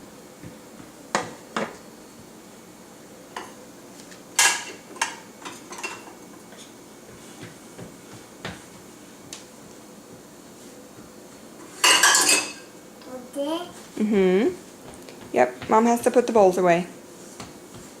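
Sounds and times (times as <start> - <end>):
dishes clinking and knocking: 1.1 - 1.8, 4.4 - 6.2, 11.8 - 12.7.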